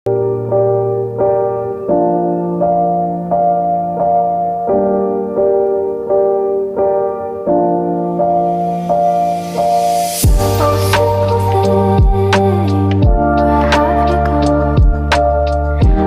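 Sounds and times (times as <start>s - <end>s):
gentle piano chords: 0.1s - 16.0s.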